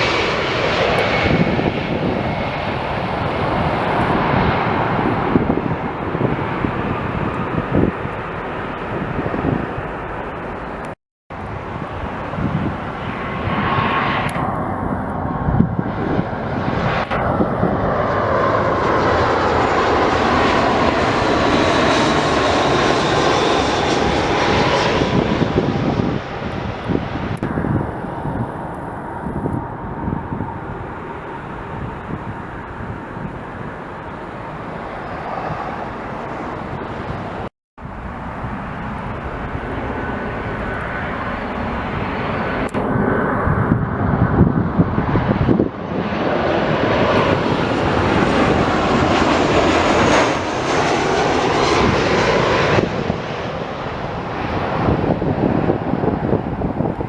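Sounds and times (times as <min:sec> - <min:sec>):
jet airliner engines passing: 0:00.0 - 0:57.0.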